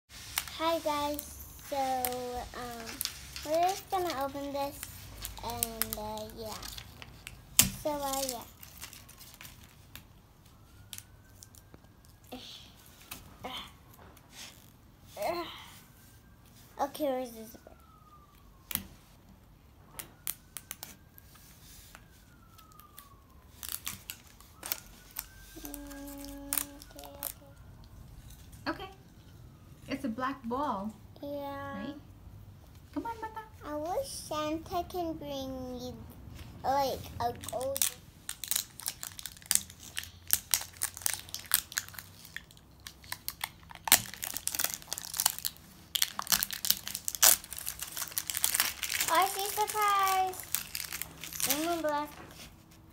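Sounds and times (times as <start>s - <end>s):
plastic wrapper crinkling and clicking: 0.2s - 12.3s, 19.9s - 21.4s, 22.0s - 28.5s, 37.3s - 52.9s.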